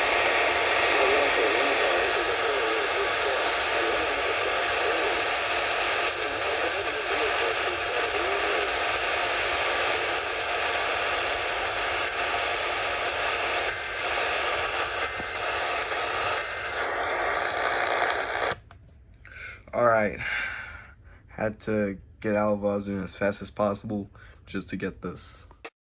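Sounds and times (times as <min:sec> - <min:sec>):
faint wavering broadcast: 0:00.0 - 0:18.6
radio static hiss: 0:00.0 - 0:18.6.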